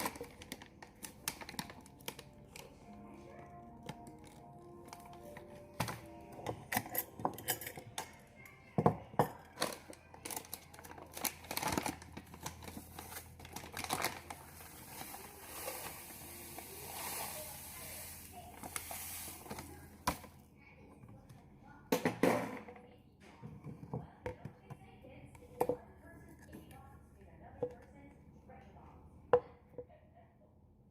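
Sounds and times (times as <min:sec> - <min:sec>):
kitchen utensils clattering: 0:04.9 - 0:12.0.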